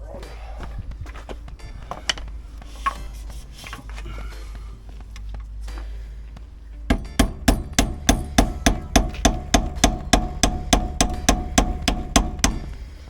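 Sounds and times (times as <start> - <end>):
hammer striking metal: 6.9 - 12.9.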